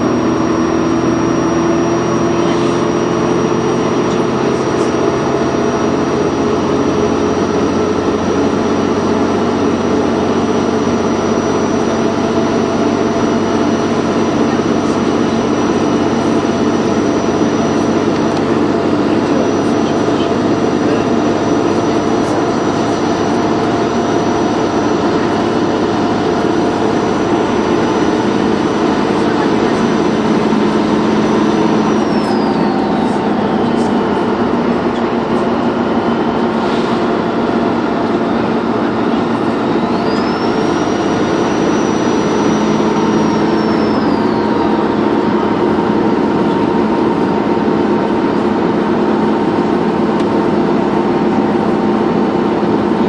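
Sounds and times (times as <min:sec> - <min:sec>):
bus engine drone: 0:00.0 - 0:53.0
turbocharger whistle: 0:04.6 - 0:34.2, 0:39.1 - 0:47.3.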